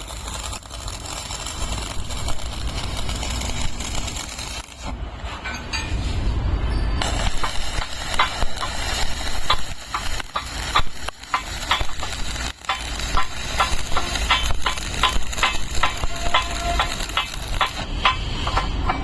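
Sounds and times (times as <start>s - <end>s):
welding arc crackling: 0.0s - 5.2s, 7.0s - 18.7s
spatter pops: 7.1s - 17.8s.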